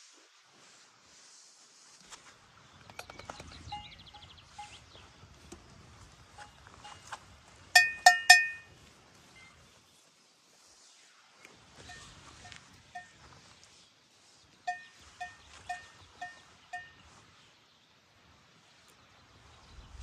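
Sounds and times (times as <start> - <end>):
livestock bells clanking: 3.0 - 4.8, 6.4 - 7.1, 7.8 - 8.7, 11.9 - 13.3, 14.7 - 17.1
loud ringing bell clangs: 7.8 - 8.7.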